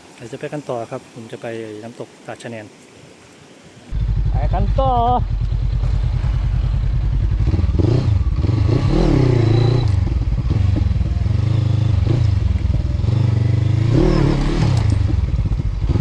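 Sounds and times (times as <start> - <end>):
motorcycle engine revving: 3.9 - 16.0.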